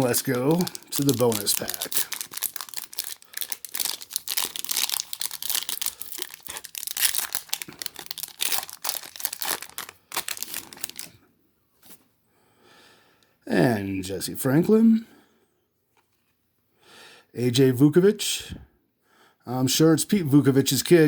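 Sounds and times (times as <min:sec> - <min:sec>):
wrapper tearing and crinkling: 0:00.0 - 0:11.1.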